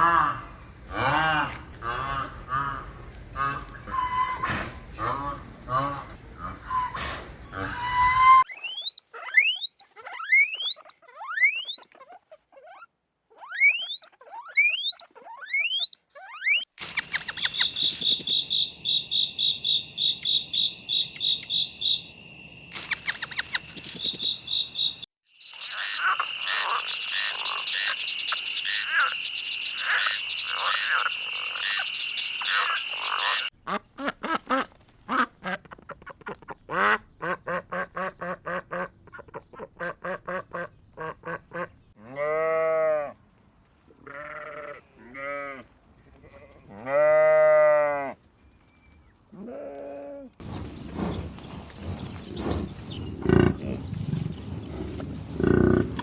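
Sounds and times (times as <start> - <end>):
short rising chirps: 8.5 - 11.8, 13.6 - 25.1
quick repeated animal calls: 8.5 - 22.0, 22.7 - 25.1.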